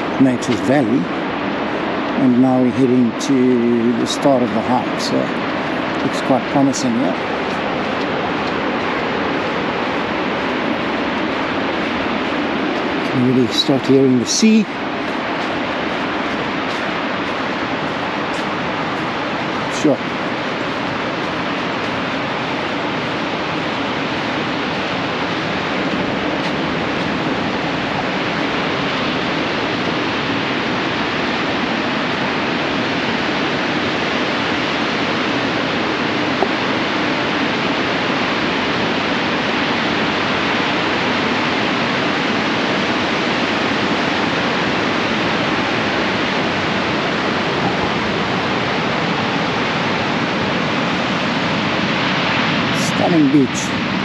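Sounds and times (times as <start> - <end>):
ocean waves breaking on beach: 0.0 - 54.0.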